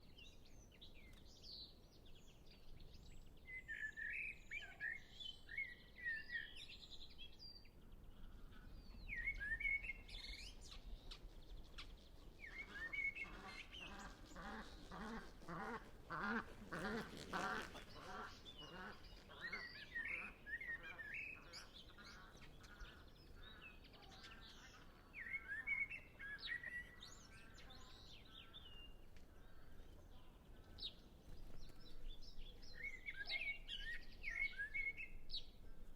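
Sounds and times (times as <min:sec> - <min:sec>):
faint birdsong: 0:00.0 - 0:35.9
blackbird singing: 0:03.4 - 0:07.6, 0:08.7 - 0:11.2, 0:12.4 - 0:14.1, 0:17.8 - 0:31.1, 0:31.8 - 0:35.6
geese flock passing over: 0:12.6 - 0:21.6.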